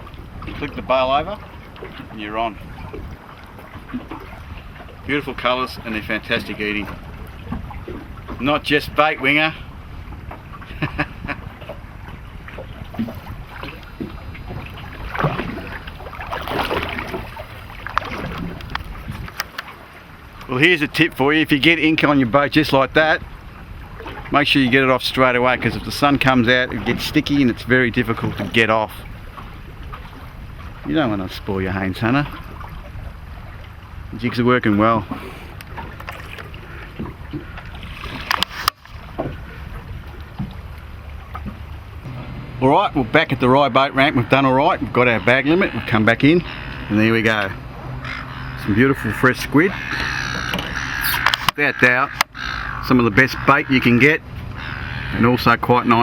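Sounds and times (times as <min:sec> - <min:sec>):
water against boat hull: 0:00.0 - 0:56.0
water splashing: 0:00.0 - 0:56.0
wind buffeting microphone: 0:00.0 - 0:56.0
sharp clicks: 0:50.5 - 0:51.6.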